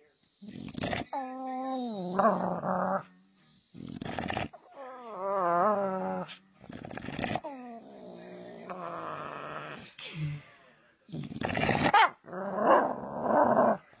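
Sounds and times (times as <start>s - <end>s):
dog growling and grumbling: 0.4s - 10.0s, 11.1s - 13.9s
dog moaning: 0.6s - 3.1s, 4.0s - 6.4s, 7.4s - 9.8s.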